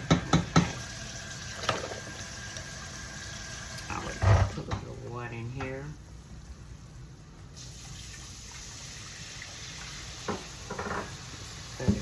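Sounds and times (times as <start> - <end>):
water running from a tap: 0.4 - 4.5, 7.6 - 12.0.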